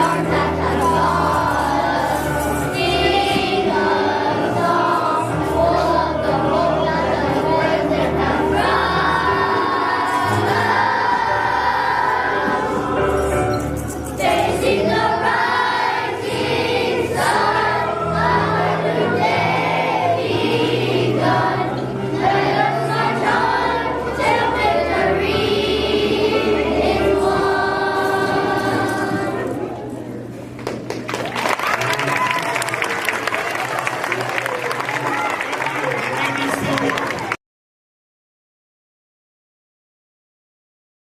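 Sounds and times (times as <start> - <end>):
group singing with band: 0.0 - 29.6.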